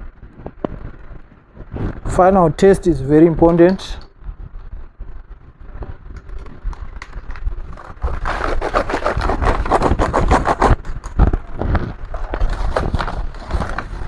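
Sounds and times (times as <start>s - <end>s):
hands scraping plastic casing: 6.4s - 14.0s.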